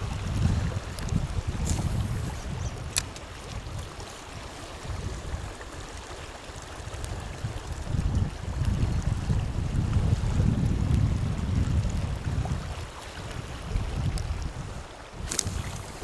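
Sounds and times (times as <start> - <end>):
wind buffeting microphone: 0.0 - 6.0, 6.8 - 16.0
sharp click: 1.0 - 3.2, 15.3 - 16.0.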